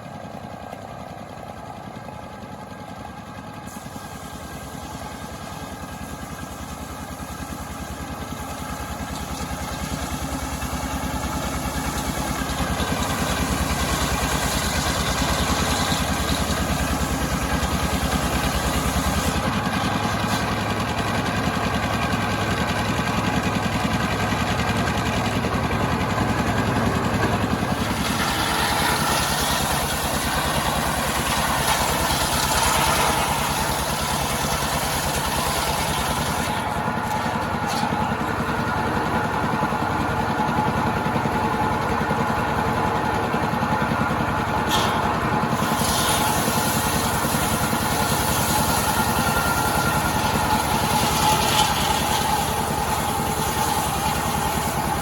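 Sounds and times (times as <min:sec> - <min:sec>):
chainsaw engine running: 0:03.9 - 0:55.0.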